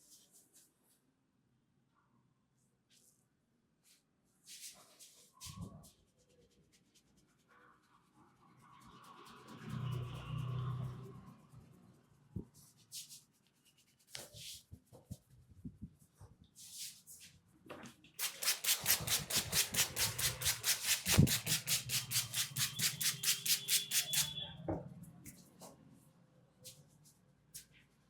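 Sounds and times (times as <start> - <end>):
hands rubbing over a head: 18.2 - 24.3.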